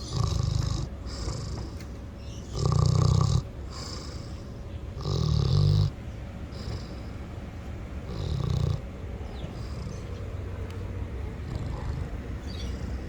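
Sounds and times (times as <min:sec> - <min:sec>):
pig snoring: 0:00.0 - 0:01.8, 0:02.4 - 0:04.4, 0:05.0 - 0:07.1, 0:08.0 - 0:08.9, 0:09.6 - 0:10.0, 0:11.5 - 0:12.8.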